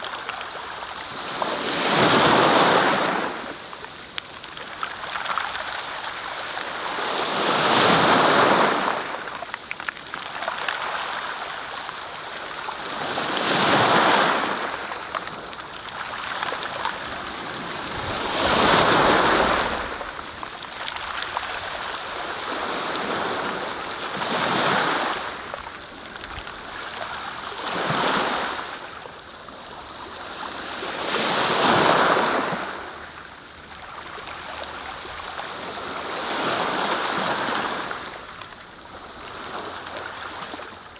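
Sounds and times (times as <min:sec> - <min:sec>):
waves washing in: 0:00.0 - 0:29.1.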